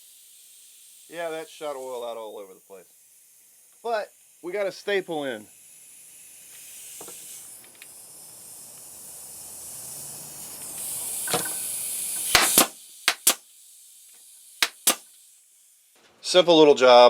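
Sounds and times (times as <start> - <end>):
compressed air hissing: 0.0 - 16.0
sharp clicks: 12.2 - 13.4, 14.6 - 15.1.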